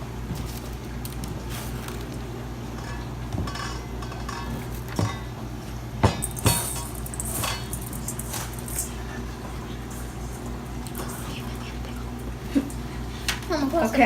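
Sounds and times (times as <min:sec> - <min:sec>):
steady low hum: 0:00.0 - 0:14.0
utensils clinking against bowls: 0:01.5 - 0:05.4, 0:06.0 - 0:12.9.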